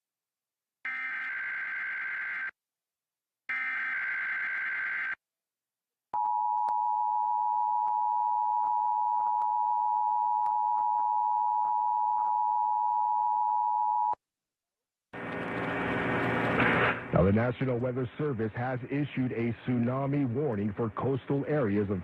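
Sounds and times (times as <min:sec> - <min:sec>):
faint crackles: 0:15.2 - 0:17.2.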